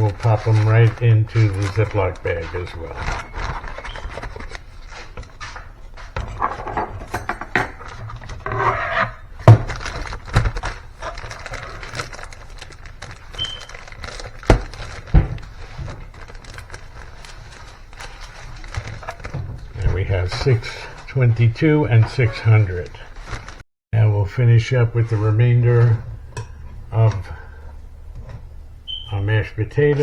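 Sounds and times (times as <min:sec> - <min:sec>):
rustling and scraping: 0:00.0 - 0:23.6.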